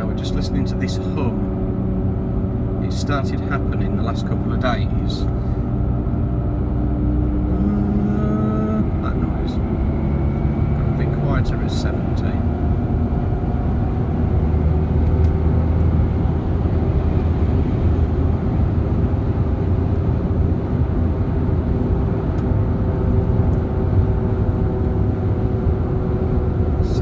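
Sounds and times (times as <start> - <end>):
low drone inside car cabin: 0.0 - 27.0
road and tyre noise: 0.0 - 27.0.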